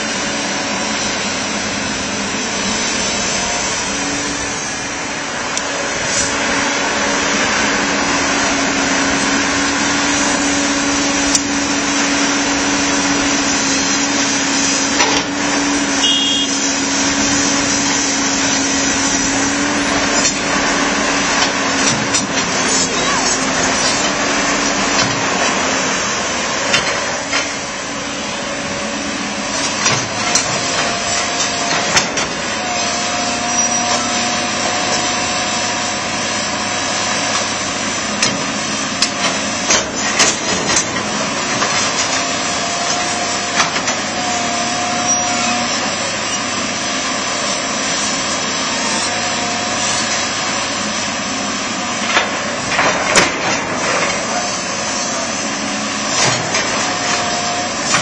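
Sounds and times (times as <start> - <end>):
diesel engine under load: 0.0 - 58.0
hydraulic whine: 0.0 - 58.0
metal clanks and knocks: 52.0 - 54.4.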